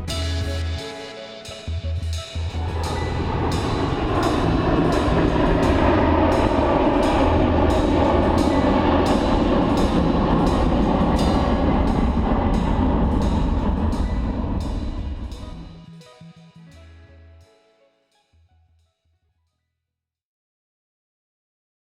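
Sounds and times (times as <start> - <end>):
music with steady drum beat: 0.0 - 17.4.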